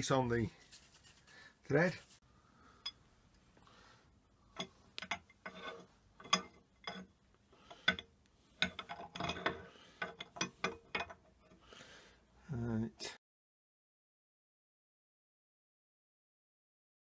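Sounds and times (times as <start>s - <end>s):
metal parts clicking and knocking: 4.6s - 7.1s, 7.7s - 11.6s.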